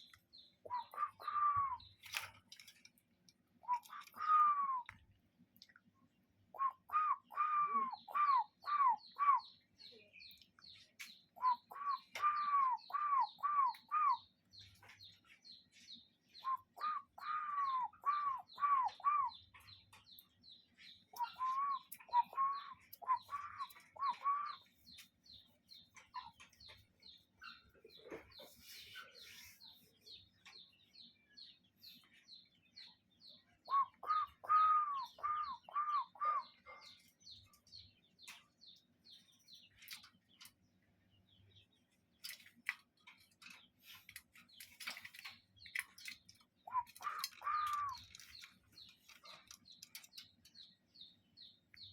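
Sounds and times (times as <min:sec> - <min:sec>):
bird whistling: 0:00.6 - 0:02.1, 0:03.6 - 0:05.0, 0:06.6 - 0:09.6, 0:11.4 - 0:14.3, 0:16.4 - 0:19.6, 0:21.2 - 0:24.9, 0:33.6 - 0:36.9, 0:46.7 - 0:48.2.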